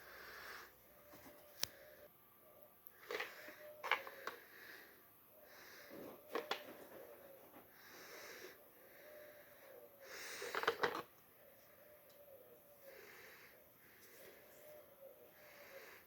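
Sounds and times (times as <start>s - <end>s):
slow wheezy breathing: 0.0s - 0.9s, 3.0s - 6.4s, 7.6s - 16.0s.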